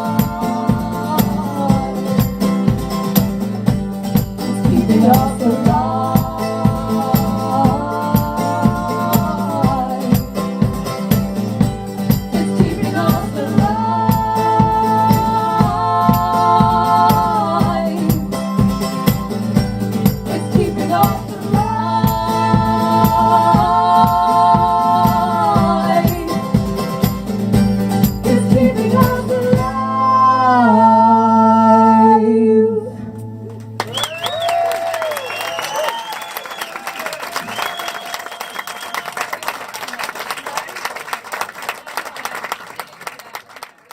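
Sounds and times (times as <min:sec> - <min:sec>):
driving drum beat: 0:00.0 - 0:29.8.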